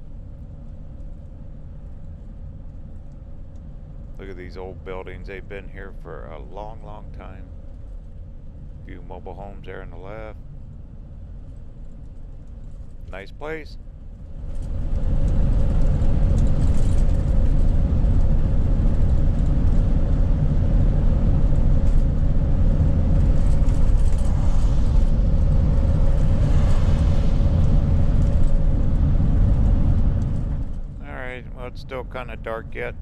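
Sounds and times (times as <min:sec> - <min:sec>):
engine and road noise rumble: 0:00.0 - 0:33.0
steady hum: 0:00.0 - 0:33.0.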